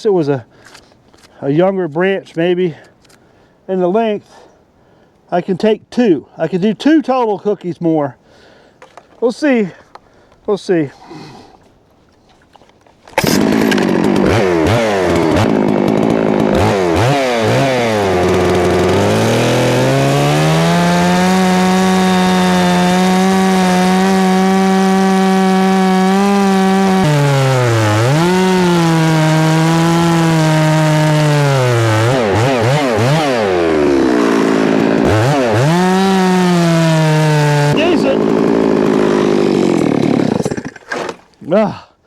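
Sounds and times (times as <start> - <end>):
chainsaw cutting log: 13.1 - 41.4.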